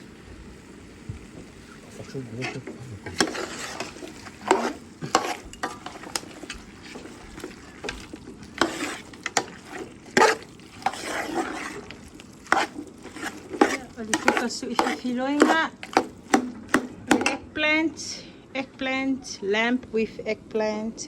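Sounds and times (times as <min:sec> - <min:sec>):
vegetables sizzling in a pan: 0:00.0 - 0:18.0
spatula stirring and scraping: 0:01.7 - 0:17.4.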